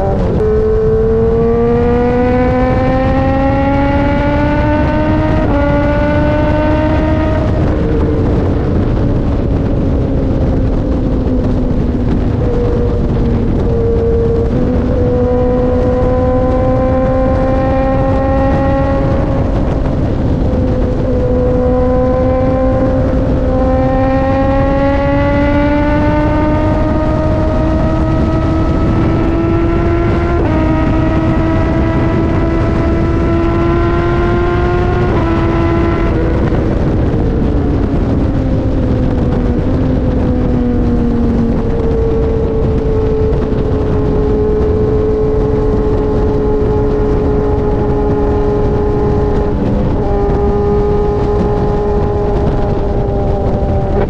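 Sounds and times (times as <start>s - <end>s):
motorcycle engine accelerating: 0.0s - 54.0s
wind rushing: 0.0s - 54.0s.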